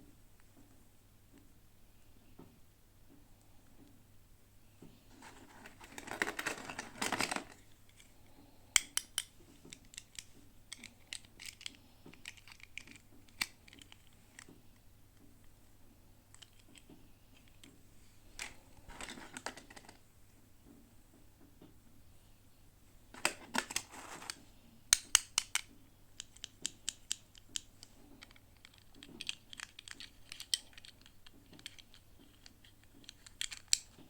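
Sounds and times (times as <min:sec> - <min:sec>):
plastic packaging crinkling: 0:05.1 - 0:07.6.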